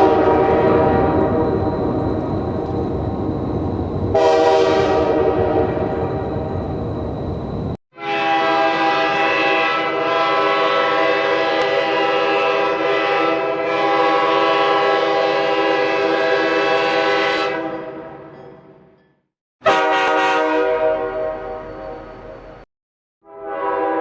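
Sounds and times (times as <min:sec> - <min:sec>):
locomotive air horn blast: 0:00.0 - 0:01.8, 0:04.1 - 0:06.1, 0:08.0 - 0:18.2, 0:19.6 - 0:22.1, 0:23.2 - 0:24.0.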